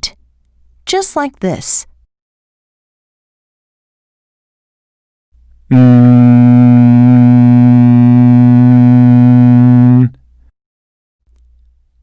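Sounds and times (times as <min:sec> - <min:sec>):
person humming: 0:05.7 - 0:10.2.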